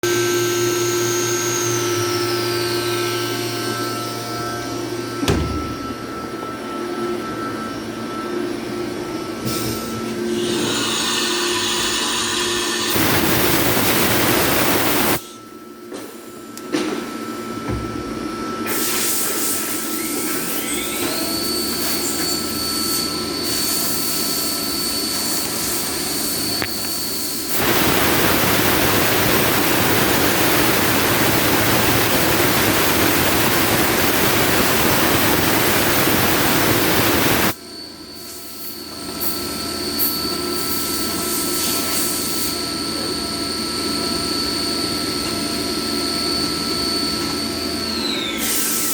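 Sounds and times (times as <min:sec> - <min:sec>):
milling machine whine: 0:00.0 - 0:15.9, 0:19.4 - 0:48.9
coolant hissing rush: 0:10.4 - 0:15.2, 0:25.2 - 0:37.6.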